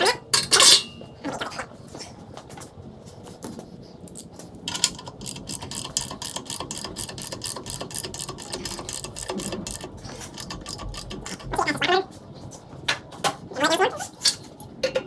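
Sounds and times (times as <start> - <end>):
ratchet wrench clicking: 4.7 - 11.7.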